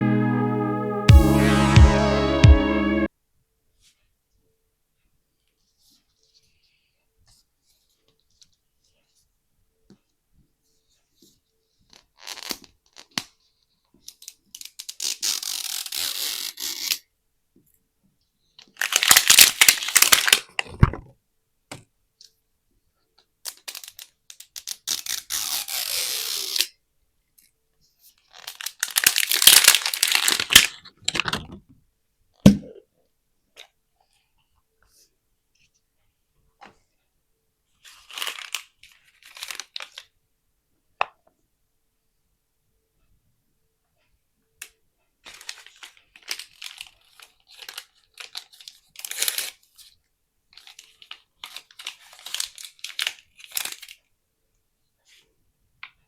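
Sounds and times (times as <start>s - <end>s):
plastic wrapping tearing and crinkling: 18.8s - 20.5s, 28.4s - 31.2s, 37.9s - 40.1s, 45.3s - 49.9s, 50.6s - 54.0s.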